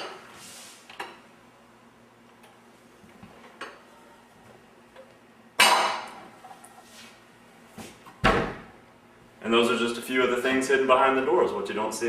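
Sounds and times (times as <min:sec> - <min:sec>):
cabinet door shutting: 0:08.2 - 0:08.7.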